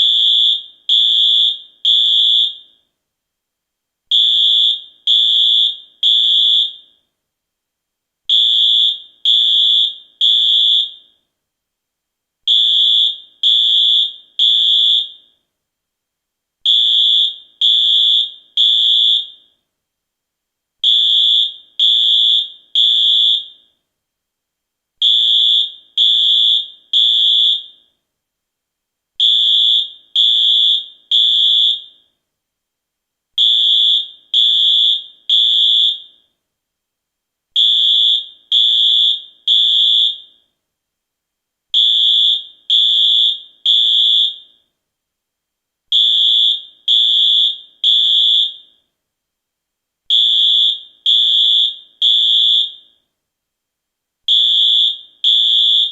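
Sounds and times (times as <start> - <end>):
high-pitched fire alarm beeps: 0.0 - 2.9, 8.3 - 11.2, 12.5 - 15.4, 16.7 - 19.6, 25.0 - 28.0, 29.2 - 32.2, 33.4 - 36.3, 37.6 - 40.5, 41.8 - 44.7, 46.0 - 48.9, 50.1 - 53.0, 54.3 - 55.9.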